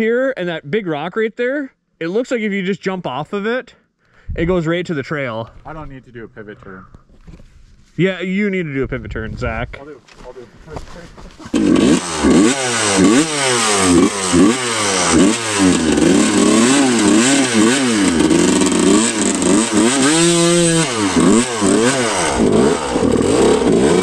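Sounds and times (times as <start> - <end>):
dirt bike engine revving: 11.4 - 24.0.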